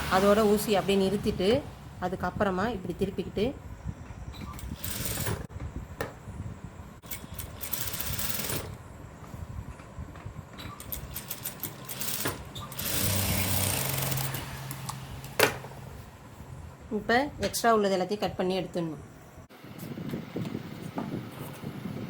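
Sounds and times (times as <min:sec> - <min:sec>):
sewing machine stitching: 0:07.1 - 0:08.7, 0:10.8 - 0:14.5.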